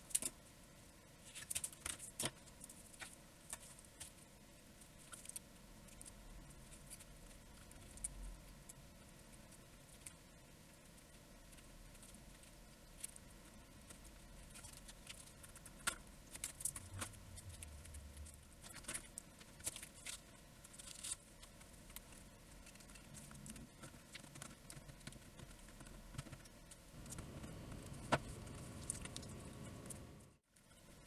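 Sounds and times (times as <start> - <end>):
soft low rumble: 16.7 - 18.8, 27.0 - 30.4.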